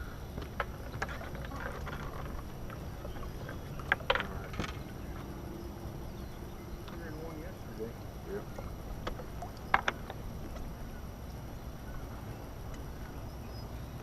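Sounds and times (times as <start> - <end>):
low steady rumble: 0.0 - 14.0
sharp knocks and clicks: 0.4 - 5.3, 9.0 - 10.7.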